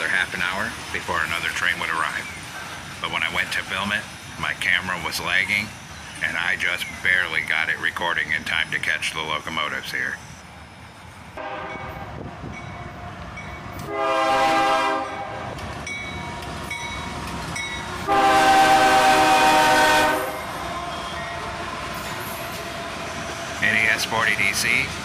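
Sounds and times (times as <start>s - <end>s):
train rumbling: 0.0s - 25.0s
locomotive air horn blasts: 11.4s - 12.1s, 13.8s - 15.6s, 18.0s - 20.5s.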